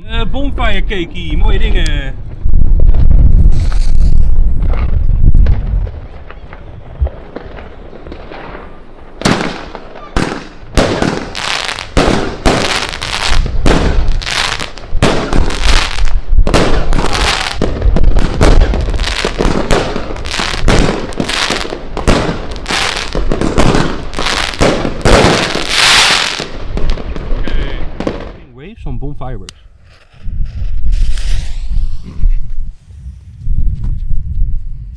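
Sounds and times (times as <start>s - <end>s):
firework cake sharp bangs: 2.2s - 28.5s, 30.8s - 32.2s.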